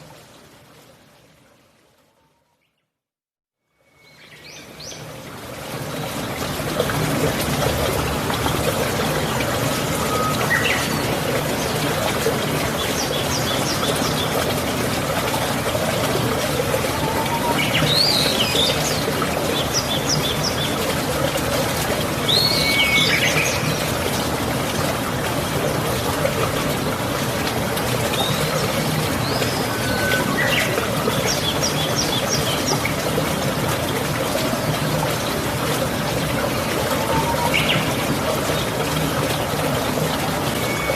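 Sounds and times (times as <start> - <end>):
running water rushing: 0.0 - 2.5, 4.0 - 40.9
birds chirping: 28.1 - 33.0, 37.0 - 38.0.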